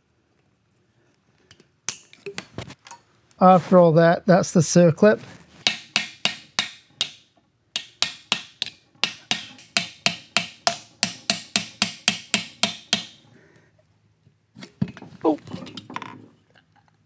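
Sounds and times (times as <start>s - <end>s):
hammer tapping on metal: 5.6s - 13.3s.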